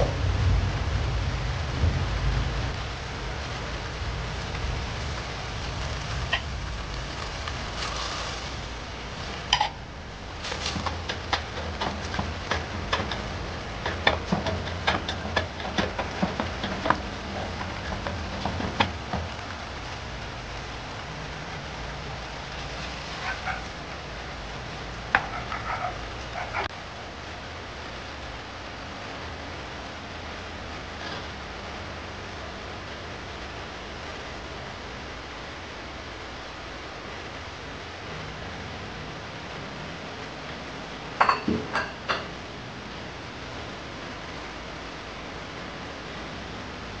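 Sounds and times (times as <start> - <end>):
steady rain: 0.0 - 47.0
dog barking: 23.2 - 23.8, 25.2 - 26.7.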